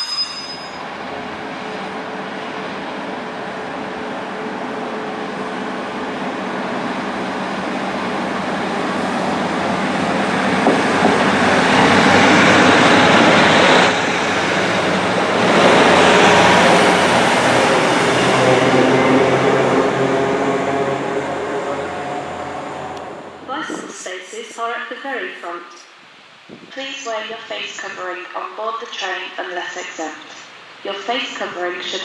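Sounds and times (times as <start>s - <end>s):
diesel train passing: 0.0s - 23.9s.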